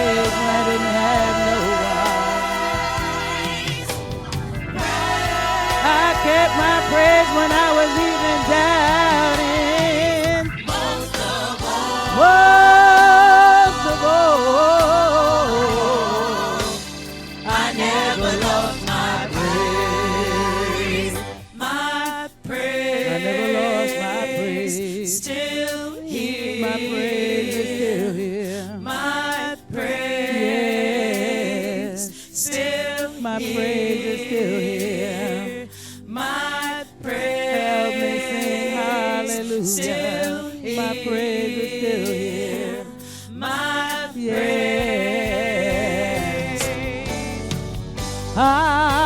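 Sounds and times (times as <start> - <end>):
gospel choir singing: 0.0 - 49.0.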